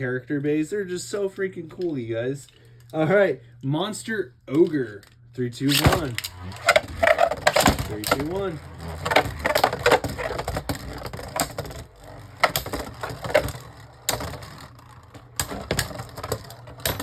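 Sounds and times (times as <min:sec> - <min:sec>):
spinning tops clacking together: 0:05.7 - 0:17.0.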